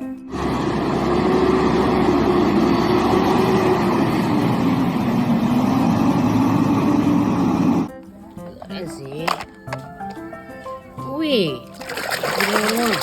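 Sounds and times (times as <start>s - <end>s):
garbage truck engine running: 0.0s - 9.8s.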